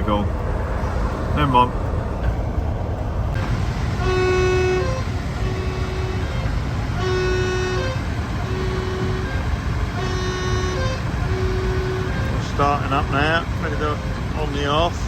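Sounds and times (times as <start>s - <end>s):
vehicle engine rumble: 0.0s - 15.0s
horn-like pitched tone: 3.4s - 15.0s.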